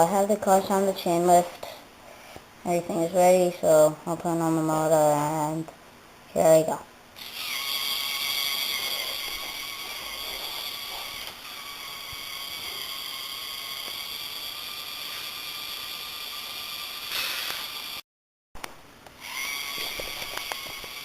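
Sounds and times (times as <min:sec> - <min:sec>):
toy motor whining: 0:07.2 - 0:18.0, 0:19.2 - 0:21.0.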